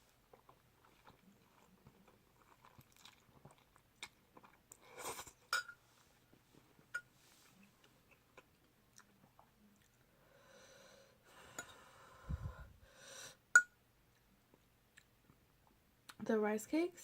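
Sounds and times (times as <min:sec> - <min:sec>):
person breathing hard: 0:10.2 - 0:13.4.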